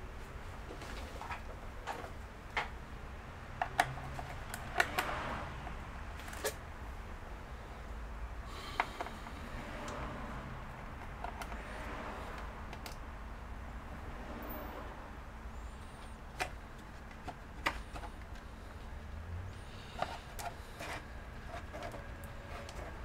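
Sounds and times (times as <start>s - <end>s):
computer parts and tools clicking: 3.6s - 6.6s, 10.7s - 13.0s.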